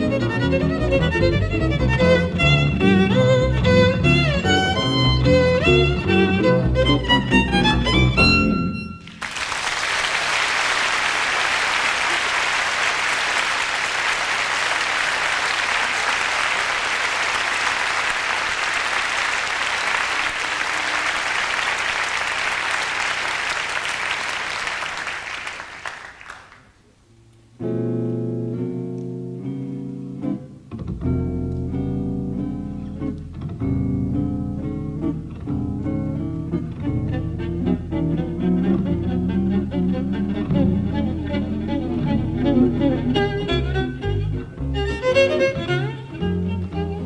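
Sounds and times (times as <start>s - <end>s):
jazz violin: 0.0s - 9.0s, 36.2s - 47.0s
guitar playing: 0.0s - 9.2s, 27.2s - 47.0s
audience applauding: 9.0s - 26.8s.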